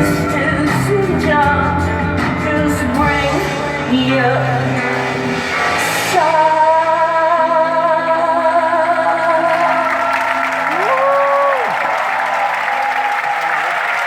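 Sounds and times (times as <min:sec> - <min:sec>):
woman singing: 0:00.0 - 0:05.0, 0:05.8 - 0:11.0.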